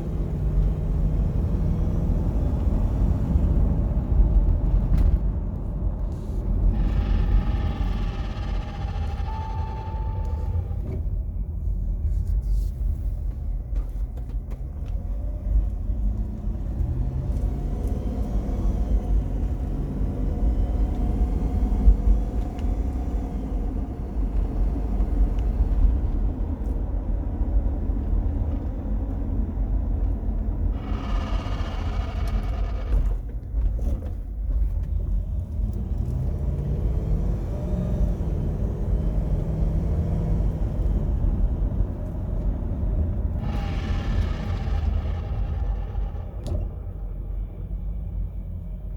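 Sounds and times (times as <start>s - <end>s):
road and engine rumble: 0.0s - 48.9s
engine note rising: 6.6s - 11.0s, 30.7s - 33.2s, 35.9s - 48.9s.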